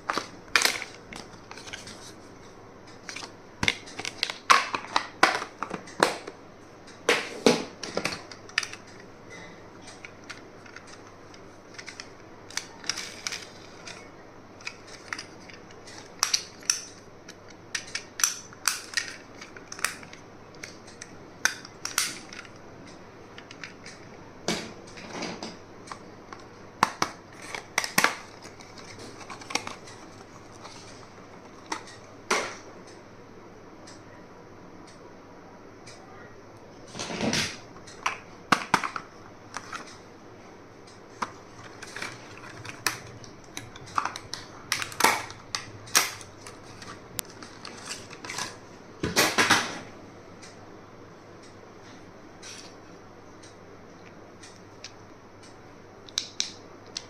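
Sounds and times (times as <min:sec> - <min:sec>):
stationery packaging clicks and crackles: 0:00.0 - 0:06.4, 0:07.1 - 0:24.2, 0:25.8 - 0:32.6, 0:40.9 - 0:48.6.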